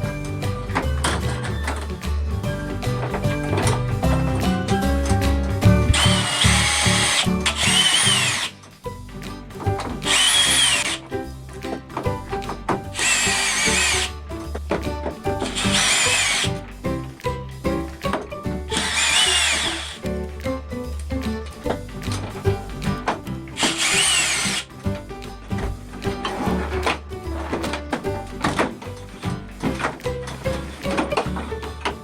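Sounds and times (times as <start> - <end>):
background music: 0.0 - 32.0
power drill whining: 5.8 - 8.6, 10.1 - 11.0, 13.0 - 14.1, 15.4 - 16.6, 18.7 - 20.0, 23.6 - 24.7.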